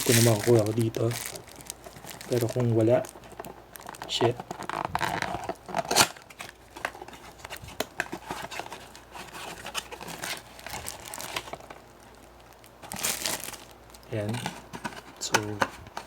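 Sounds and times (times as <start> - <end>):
plastic packaging crinkling: 0.0 - 16.0.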